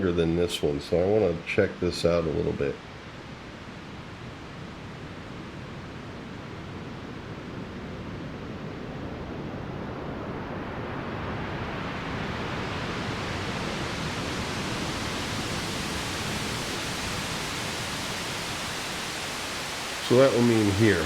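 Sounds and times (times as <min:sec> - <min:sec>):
synthesized filtered noise wave: 0:08.9 - 0:21.0.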